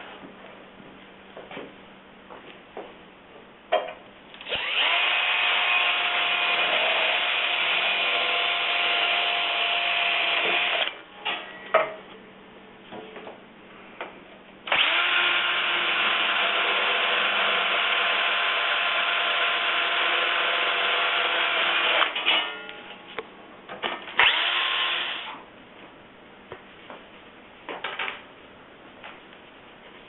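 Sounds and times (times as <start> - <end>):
electric drill running: 4.4 - 11.0, 14.7 - 22.2, 24.2 - 25.4.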